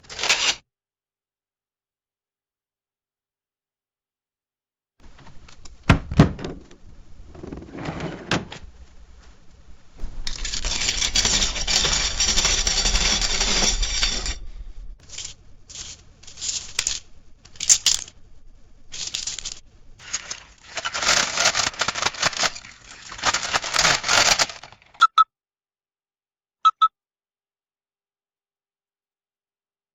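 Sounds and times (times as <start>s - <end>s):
coins jingling: 15.0s - 18.1s, 18.9s - 24.7s
banknotes crinkling: 15.0s - 25.0s
short electronic beeps: 25.0s - 25.3s, 26.6s - 26.9s.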